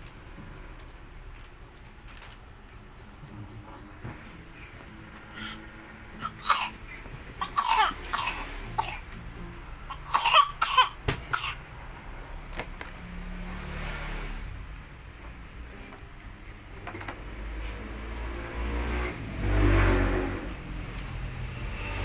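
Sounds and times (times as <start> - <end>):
small child coughing: 6.2 - 9.2, 9.9 - 11.6.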